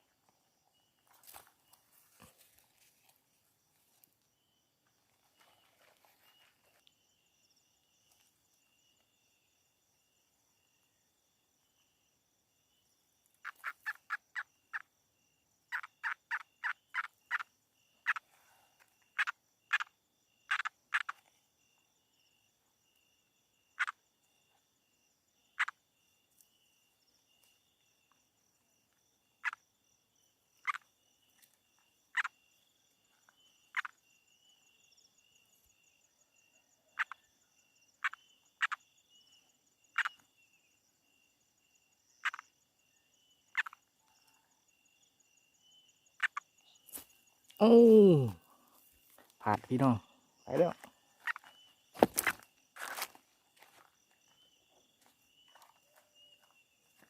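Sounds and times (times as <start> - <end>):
insect trill: 0.0 - 57.0
frogs calling: 13.3 - 57.0.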